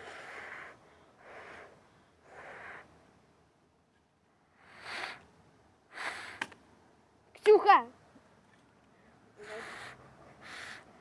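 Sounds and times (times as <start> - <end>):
faint puffs of breath: 0.0 - 3.1, 4.4 - 6.6, 9.0 - 11.0.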